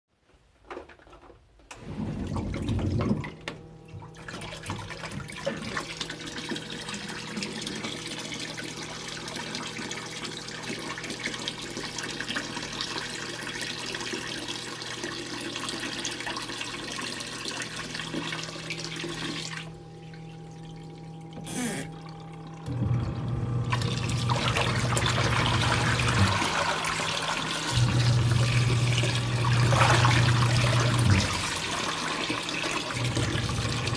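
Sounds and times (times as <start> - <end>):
washing machine pump humming: 1.5 - 33.9.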